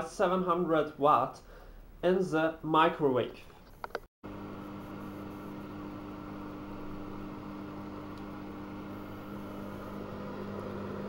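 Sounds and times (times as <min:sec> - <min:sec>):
microwave oven humming: 0:04.3 - 0:11.0.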